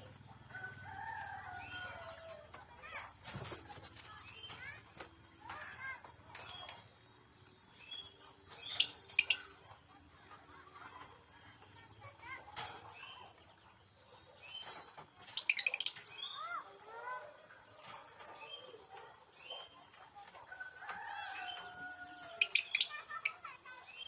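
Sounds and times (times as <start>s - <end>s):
lovebirds chirping: 5.4s - 24.0s.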